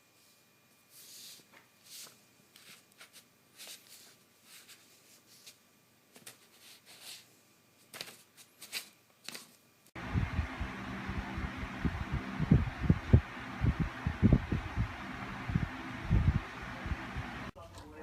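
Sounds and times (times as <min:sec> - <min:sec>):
loud low steady hum: 0:10.0 - 0:17.6.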